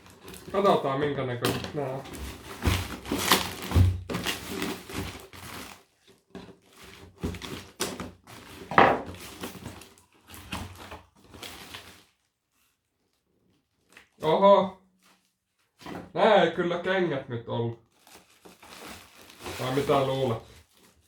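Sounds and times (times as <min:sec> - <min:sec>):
cardboard box rustling and knocks: 0:01.5 - 0:05.7, 0:06.3 - 0:11.6.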